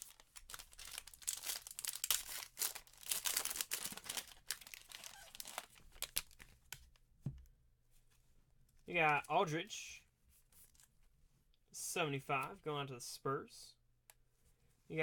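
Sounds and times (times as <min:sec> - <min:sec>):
plastic wrapping crinkling: 0:00.0 - 0:06.7.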